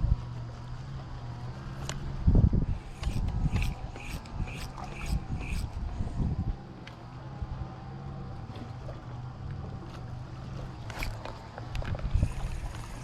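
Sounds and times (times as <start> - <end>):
wind noise: 0.0 - 0.4, 2.0 - 6.7, 10.9 - 13.0
low motor hum: 0.0 - 13.0.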